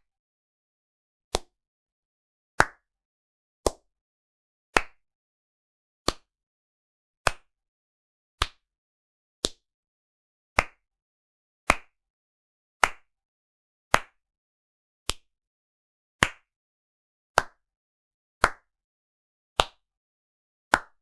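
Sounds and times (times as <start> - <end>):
slow hand clapping: 2.6 - 2.8, 4.7 - 5.0, 7.2 - 7.5, 10.6 - 10.8, 11.7 - 12.0, 12.8 - 13.1, 13.9 - 14.2, 16.2 - 16.5, 17.4 - 17.6, 18.4 - 18.7, 20.7 - 21.0.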